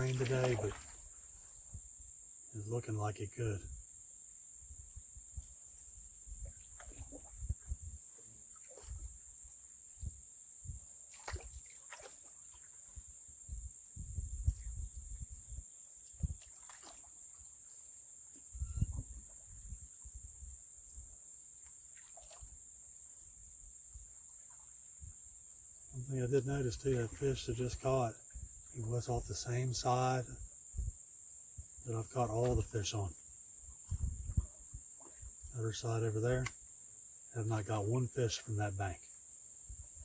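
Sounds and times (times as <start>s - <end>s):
thumps and knocks in a canoe: 0.0s - 1.9s, 6.2s - 9.2s, 10.0s - 15.5s, 16.1s - 17.3s, 18.3s - 20.4s, 31.6s - 32.7s, 33.6s - 35.5s
crickets and insects chirping: 0.0s - 40.0s.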